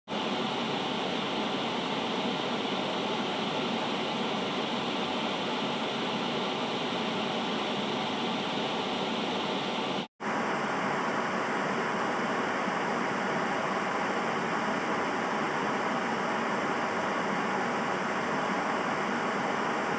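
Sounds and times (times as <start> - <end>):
television static hiss: 0.2 - 10.1.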